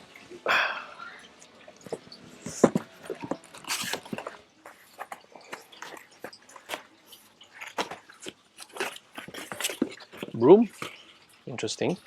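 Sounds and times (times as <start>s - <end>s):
packaging rustling: 1.9s - 11.2s.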